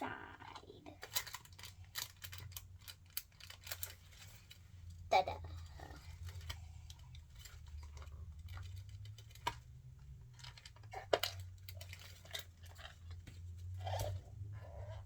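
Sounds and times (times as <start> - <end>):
plastic toy pieces clicking: 0.9 - 4.6.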